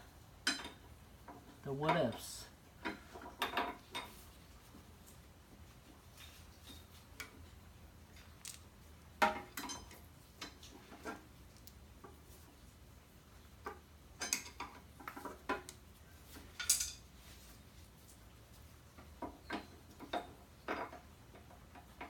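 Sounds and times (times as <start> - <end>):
metallic clinks and taps of tools: 16.5 - 17.0.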